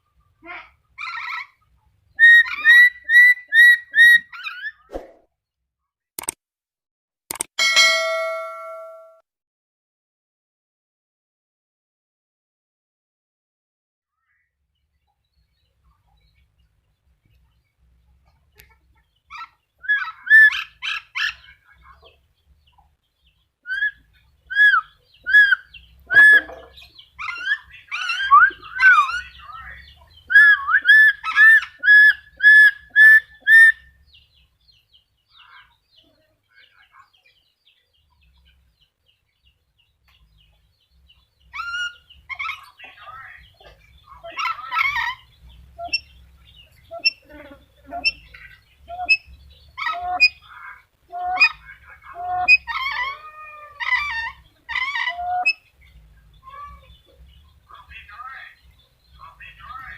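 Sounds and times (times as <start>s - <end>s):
parrot chattering: 44.2s - 45.2s, 46.9s - 55.6s.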